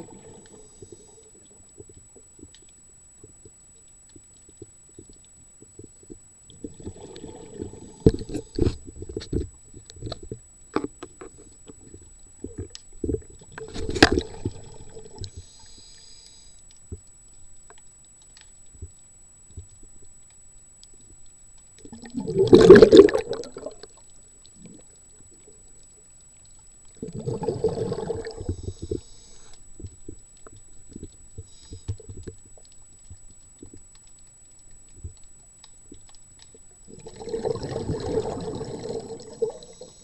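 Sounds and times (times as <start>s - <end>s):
water gurgling and sloshing: 0.0s - 40.0s.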